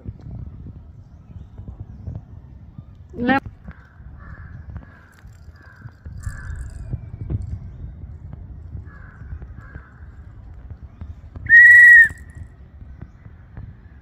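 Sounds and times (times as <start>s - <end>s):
crows cawing: 3.7s - 6.7s, 8.9s - 10.0s
high whistle: 11.5s - 12.4s.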